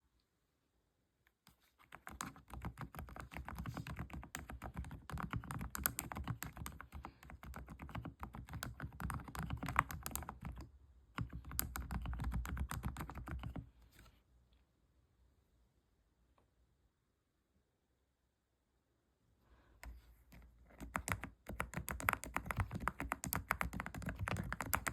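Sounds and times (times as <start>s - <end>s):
fast typing on keyboard: 1.8s - 13.7s, 20.3s - 24.9s.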